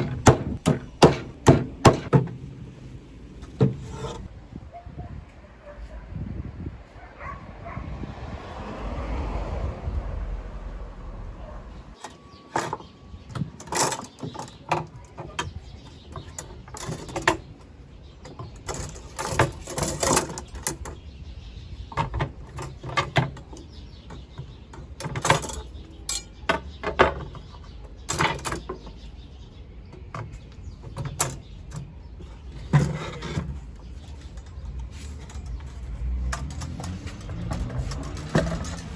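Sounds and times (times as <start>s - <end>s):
hard objects knocking and clattering: 0.0s - 2.5s, 3.4s - 4.3s, 29.9s - 38.9s.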